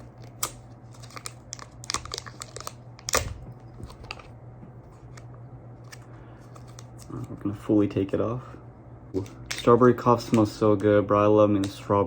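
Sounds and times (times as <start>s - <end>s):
packaging tearing: 0.0s - 4.3s
packaging crinkling: 0.0s - 4.4s.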